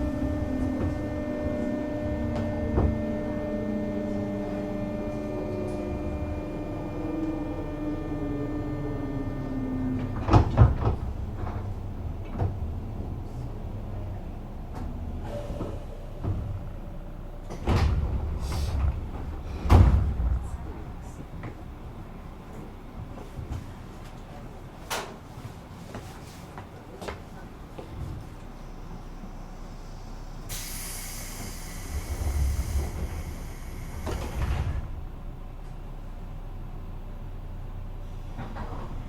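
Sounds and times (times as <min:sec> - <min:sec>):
electric train motor whine: 0:00.0 - 0:12.2, 0:28.9 - 0:35.0
train doors sliding open: 0:00.0 - 0:21.9, 0:30.5 - 0:35.2, 0:38.1 - 0:39.0
air hiss bursts: 0:30.5 - 0:34.3.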